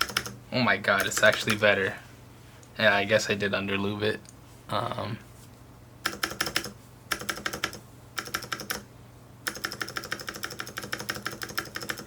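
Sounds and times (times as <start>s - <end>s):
clicky mechanical keyboard typing: 0.0s - 0.4s, 1.0s - 1.6s, 6.0s - 8.8s, 9.5s - 12.0s.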